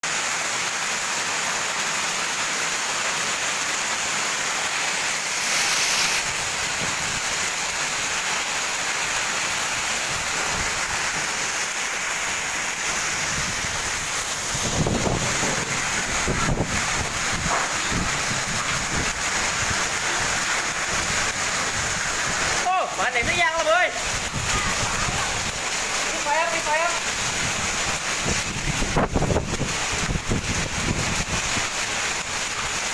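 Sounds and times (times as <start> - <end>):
heavy rain and hail falling: 0.0 - 32.9
wind gusts buffeting microphone: 6.2 - 7.4, 12.8 - 22.6, 23.2 - 26.0, 26.6 - 32.8.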